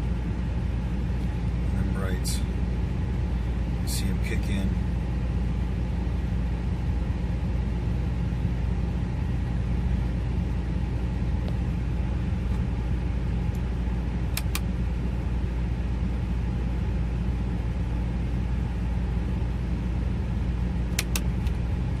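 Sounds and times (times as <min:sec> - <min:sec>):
engine humming from inside cab: 0:00.0 - 0:22.0
sharp clicks: 0:14.3 - 0:14.7, 0:20.9 - 0:21.6.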